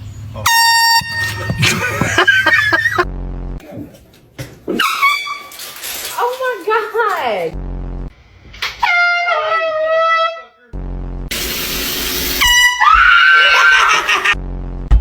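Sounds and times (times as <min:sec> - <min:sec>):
air horn blast: 0:00.4 - 0:03.1, 0:12.4 - 0:12.9
people screaming: 0:01.2 - 0:03.0, 0:12.7 - 0:14.4.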